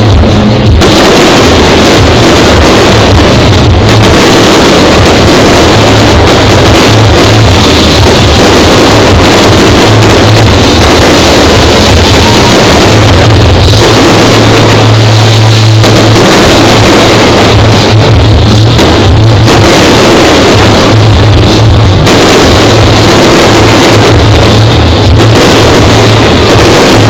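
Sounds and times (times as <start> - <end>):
loud distorted music: 0.0 - 27.0
pulsing low bass: 0.0 - 27.0.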